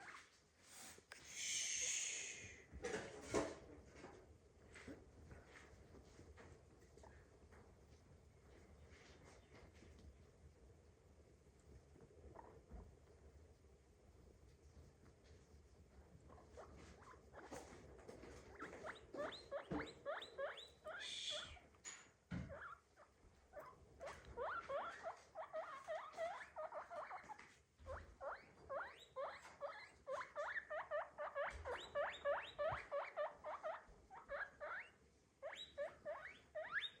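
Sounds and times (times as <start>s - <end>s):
guinea pig squeaking: 0.0s - 0.3s, 16.2s - 21.6s, 22.4s - 37.0s.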